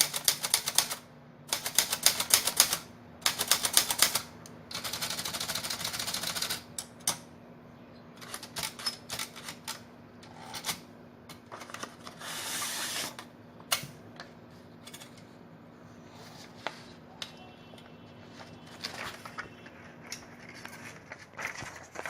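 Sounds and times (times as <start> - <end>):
typewriter rasping: 0.0 - 6.7
typewriter clicks and clacks: 0.0 - 7.2, 8.2 - 9.8.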